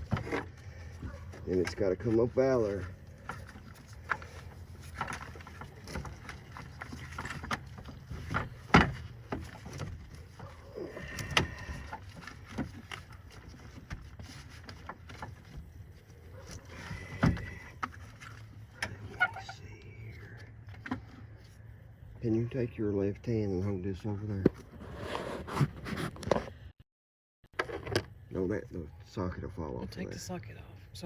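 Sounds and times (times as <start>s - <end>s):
truck battery clunking and scraping: 0.0s - 23.3s.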